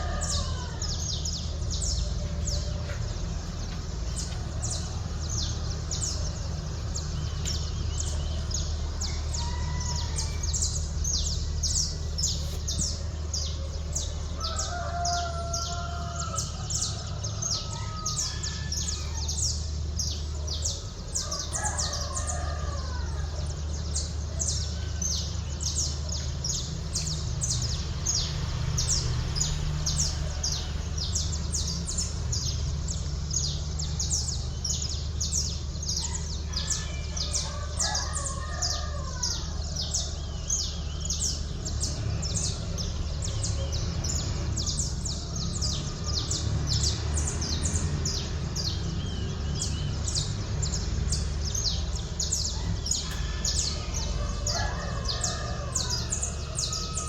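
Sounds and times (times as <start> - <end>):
rooster crowing: 0.0 - 3.2, 8.5 - 12.8, 14.0 - 19.8, 21.2 - 23.8, 35.9 - 41.3, 51.6 - 57.0
low city hum: 0.0 - 57.0
small birds chirping: 0.0 - 57.0.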